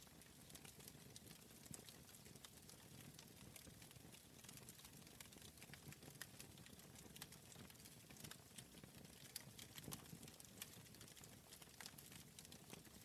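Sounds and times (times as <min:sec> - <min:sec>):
wood fire crackling: 0:00.2 - 0:13.0.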